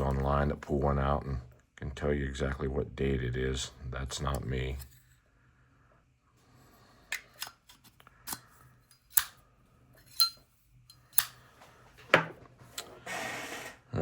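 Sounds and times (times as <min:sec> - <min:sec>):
metallic lighter clicks and clinks: 0:08.3 - 0:09.4, 0:10.1 - 0:11.4.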